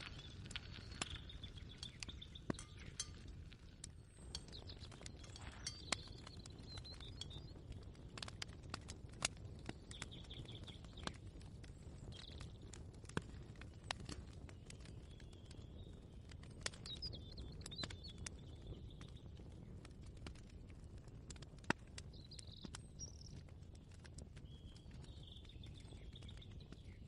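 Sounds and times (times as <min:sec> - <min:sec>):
bird chirps: 0:00.0 - 0:03.3, 0:04.1 - 0:07.8, 0:09.7 - 0:11.2, 0:14.6 - 0:19.3, 0:22.1 - 0:23.4, 0:24.4 - 0:27.0
small clicks and crackles: 0:00.0 - 0:27.0.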